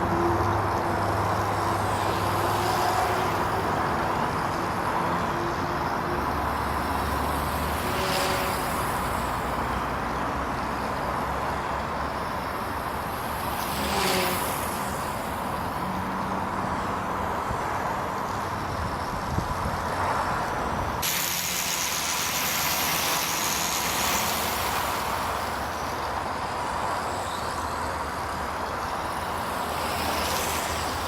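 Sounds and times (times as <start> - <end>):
quadcopter propellers buzzing: 0.0 - 31.0
wind noise on microphone: 16.6 - 31.0.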